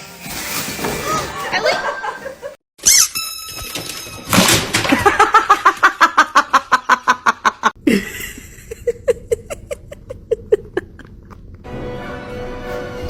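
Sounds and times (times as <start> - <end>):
giggling pulses: 6.7 - 11.5.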